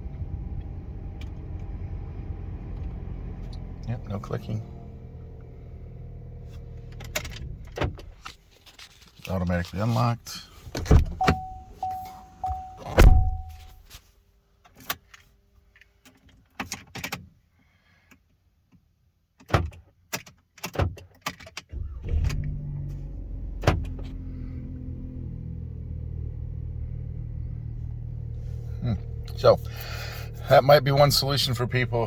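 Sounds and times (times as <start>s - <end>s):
brief chime: 11.2s - 13.6s
clunks and knocks in truck cab: 12.5s - 13.6s
truck engine starting and idling: 21.7s - 32.0s.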